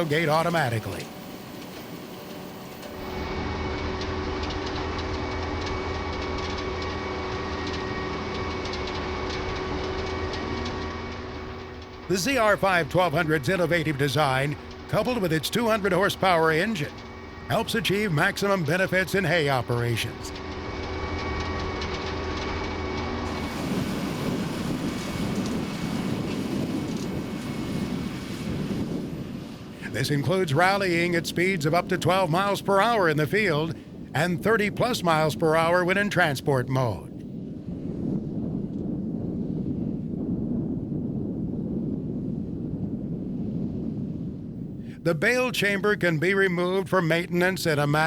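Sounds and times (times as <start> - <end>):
baler engine droning: 0.0 - 48.0
machine clattering ticks: 2.8 - 22.6
wind noise on microphone: 2.8 - 46.9.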